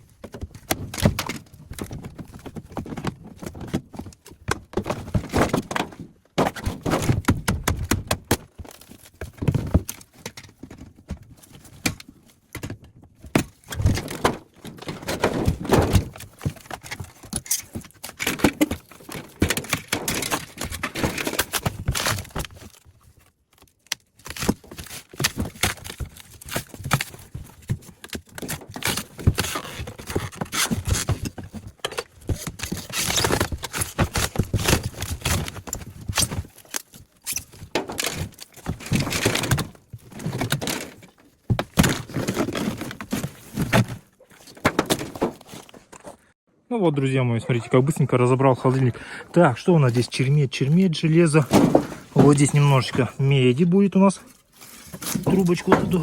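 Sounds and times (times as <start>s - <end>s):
metal parts knocking and scraping: 13.3s - 22.7s.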